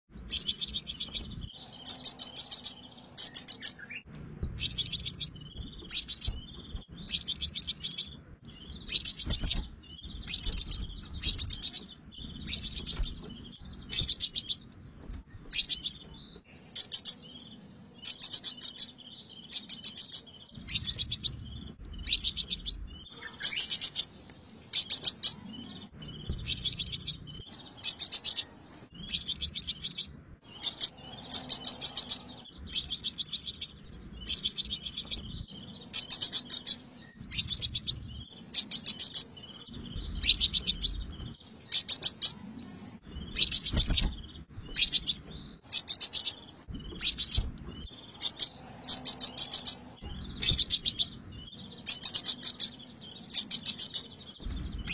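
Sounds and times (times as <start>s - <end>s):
bird trilling and chirping: 0.1s - 54.9s.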